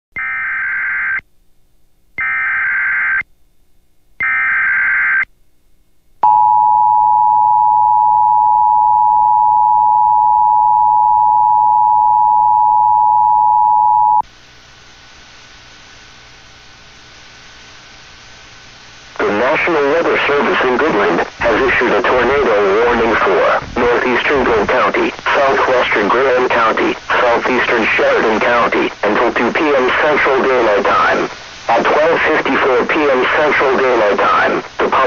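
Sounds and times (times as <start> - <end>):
two-tone attention signal: 6.2 - 14.2
faint radio hiss: 14.2 - 35.0.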